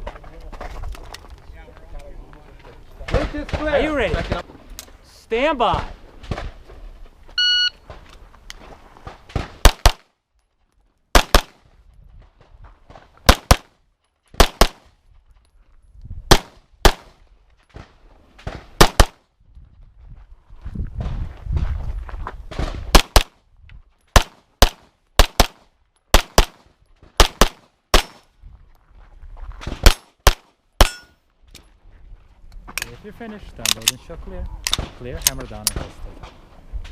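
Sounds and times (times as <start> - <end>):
shot timer beep: 7.4 - 7.8
pistol shots: 9.3 - 10.1, 11.1 - 11.6, 13.2 - 13.7, 14.3 - 14.9, 16.3 - 17.1, 18.4 - 19.2, 22.6 - 23.3, 24.1 - 26.6, 27.2 - 28.2, 29.7 - 31.1.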